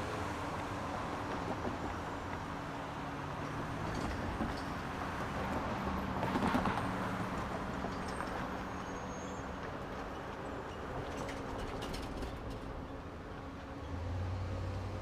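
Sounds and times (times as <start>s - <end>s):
street traffic: 0.0s - 15.0s.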